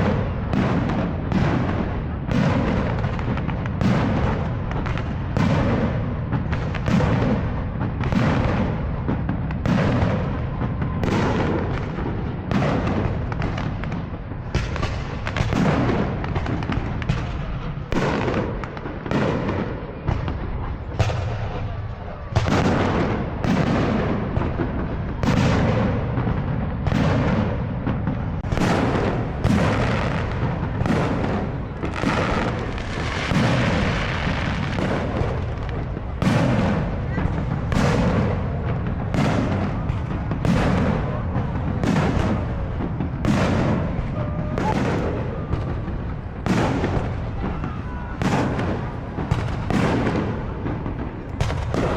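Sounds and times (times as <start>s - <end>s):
fireworks bursting: 0.0s - 51.9s.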